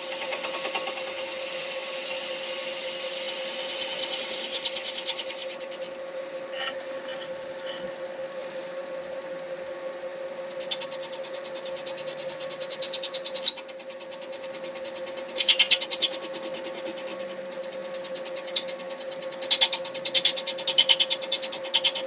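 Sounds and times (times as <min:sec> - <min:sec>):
lathe humming: 0:00.0 - 0:09.2
turning tool scraping: 0:06.5 - 0:08.0.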